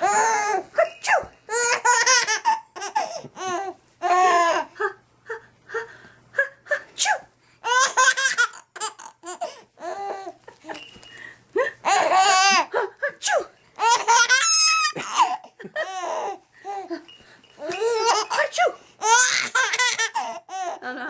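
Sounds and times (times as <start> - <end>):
baby laughing: 0.0 - 4.8, 7.0 - 10.8, 11.8 - 13.2, 13.8 - 16.9, 17.6 - 20.8.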